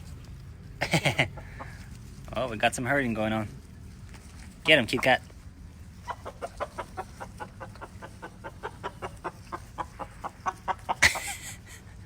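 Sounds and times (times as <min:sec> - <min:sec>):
chickens clucking: 0:00.8 - 0:02.0, 0:04.7 - 0:11.6.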